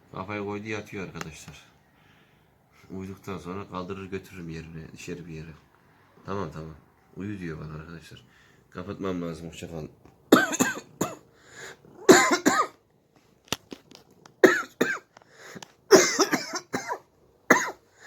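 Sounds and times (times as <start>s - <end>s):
man coughing: 10.3s - 11.2s, 12.1s - 12.8s, 14.4s - 15.1s, 15.9s - 17.8s.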